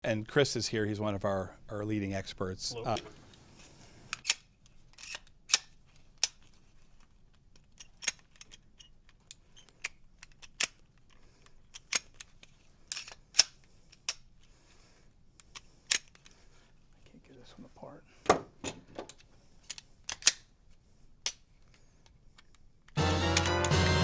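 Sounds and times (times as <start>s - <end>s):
pistol parts clicking and snapping: 4.1s - 14.5s, 15.4s - 16.4s, 19.1s - 20.6s, 21.2s - 23.5s.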